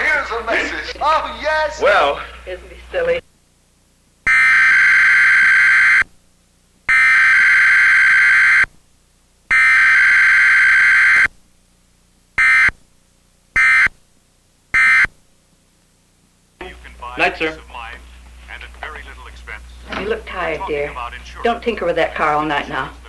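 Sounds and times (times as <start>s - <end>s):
buzzing digital data bursts: 4.2s - 6.1s, 6.9s - 8.7s, 9.5s - 11.3s, 12.4s - 12.8s, 14.7s - 15.1s.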